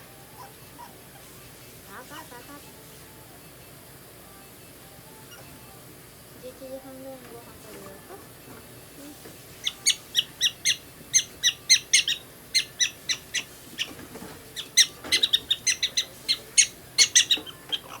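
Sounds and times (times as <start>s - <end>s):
prairie dog chirping: 9.6s - 18.0s.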